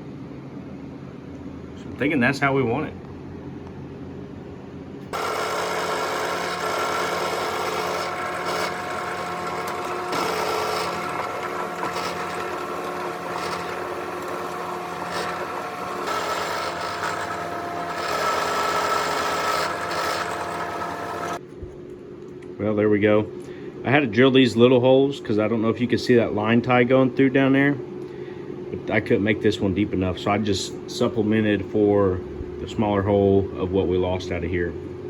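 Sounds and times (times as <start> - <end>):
electric drill boring into wood: 5.1 - 21.4.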